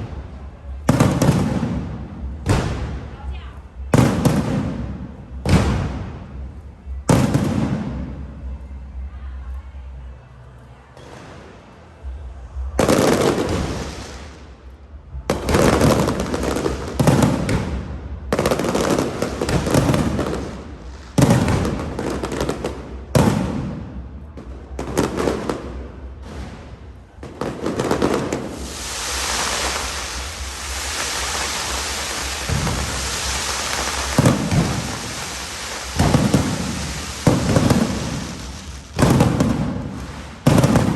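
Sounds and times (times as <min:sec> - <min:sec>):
firework shells booming: 0:04.0 - 0:06.4, 0:18.4 - 0:23.9, 0:24.9 - 0:40.9
firework crackling hiss: 0:12.8 - 0:14.8, 0:25.0 - 0:40.9.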